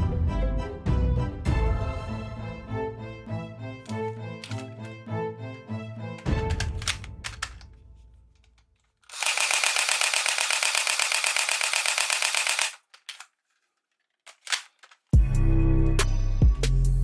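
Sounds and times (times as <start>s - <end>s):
mechanical clicks: 6.3s - 7.7s, 8.4s - 13.3s
toy gun rapid firing: 6.5s - 7.7s, 9.0s - 13.3s.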